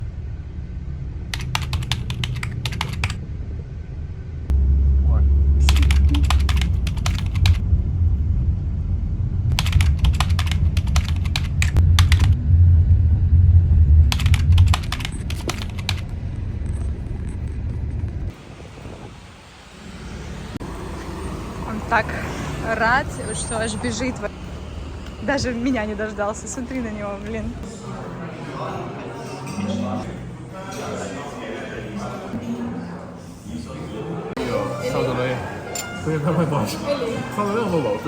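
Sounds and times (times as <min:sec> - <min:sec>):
low rumble: 0:00.0 - 0:19.4
rapid clicking: 0:01.3 - 0:03.2, 0:05.6 - 0:07.6, 0:09.5 - 0:12.4, 0:14.0 - 0:16.1.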